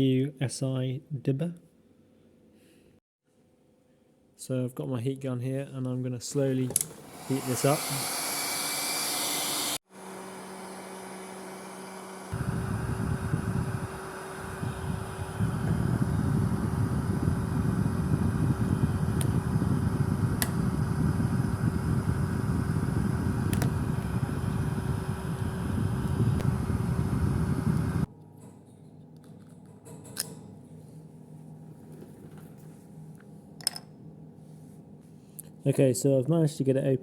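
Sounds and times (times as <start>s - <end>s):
heat gun blowing: 7.0s - 28.1s.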